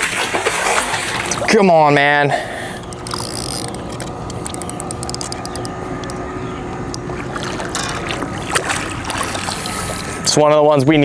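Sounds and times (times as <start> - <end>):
splash: 0.0 - 1.6, 7.1 - 10.4
faint steady hum: 0.0 - 11.0
light clicks: 2.8 - 6.2.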